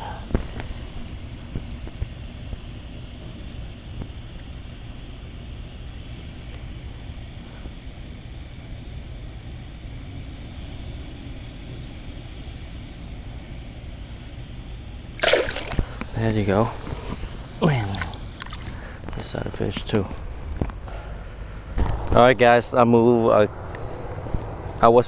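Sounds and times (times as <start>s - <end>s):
faint hiss: 0.0s - 23.9s
steady low rumble: 15.4s - 25.0s.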